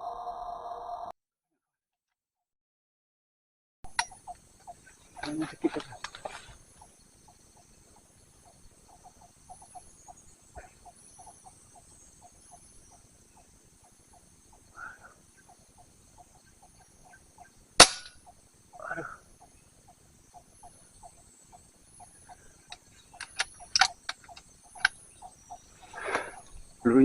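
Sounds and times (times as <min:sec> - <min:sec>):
rhythmic ticking of calling insect: 0:03.9 - 0:27.0
rifle shot: 0:17.8 - 0:18.2.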